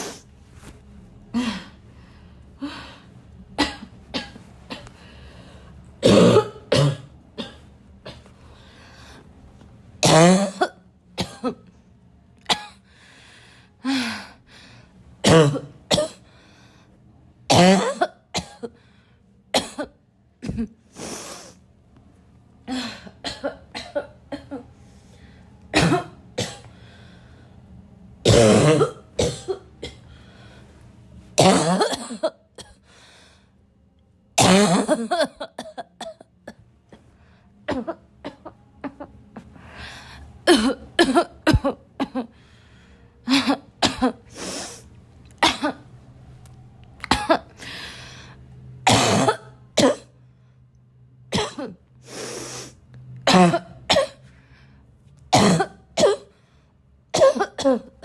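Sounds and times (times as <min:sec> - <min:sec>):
person coughing harshly: 0:03.6 - 0:04.9, 0:06.0 - 0:08.3, 0:10.0 - 0:11.6, 0:12.5 - 0:12.8, 0:15.2 - 0:16.3, 0:17.5 - 0:18.8, 0:19.5 - 0:20.8, 0:22.7 - 0:24.6, 0:25.7 - 0:26.7, 0:28.2 - 0:30.0, 0:31.4 - 0:32.8, 0:34.4 - 0:36.3, 0:37.7 - 0:39.1, 0:40.4 - 0:42.4, 0:43.3 - 0:44.8, 0:45.4 - 0:45.9, 0:47.1 - 0:47.5, 0:48.8 - 0:50.1, 0:51.3 - 0:51.8, 0:53.3 - 0:54.3, 0:55.3 - 0:56.4, 0:57.1 - 0:58.0.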